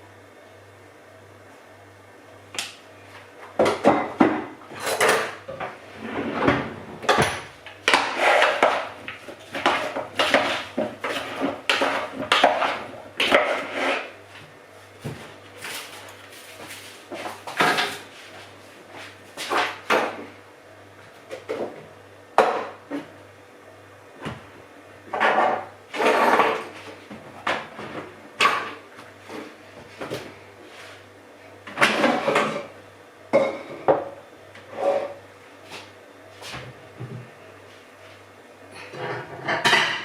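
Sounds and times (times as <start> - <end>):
dishes and utensils clattering: 33.3 - 34.1, 38.7 - 40.0.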